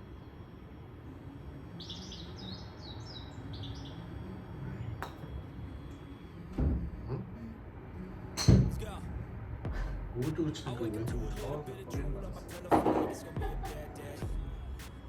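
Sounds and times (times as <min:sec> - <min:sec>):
birds chirping: 0:00.0 - 0:07.2.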